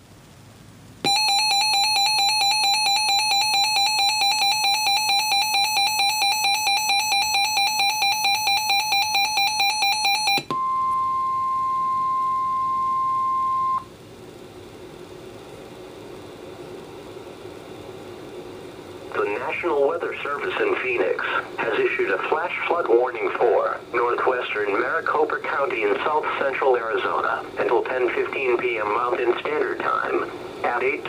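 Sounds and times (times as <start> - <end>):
electronic buzzer alarm pulsing: 1.0 - 13.9
steady warning alarm tone: 1.0 - 13.9.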